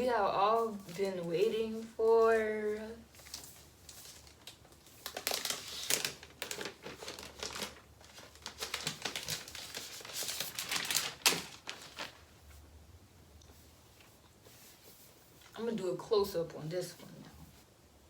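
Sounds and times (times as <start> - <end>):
packaging crinkling and rustling: 0.0 - 12.6.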